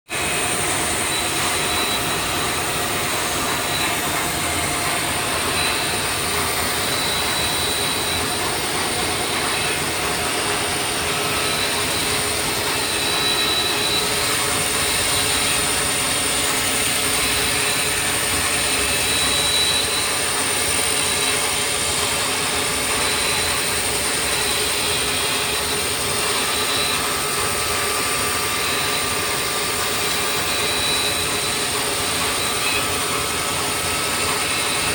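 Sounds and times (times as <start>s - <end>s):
cnc machine running: 0.1s - 34.9s
high steady machine whine: 0.1s - 34.9s.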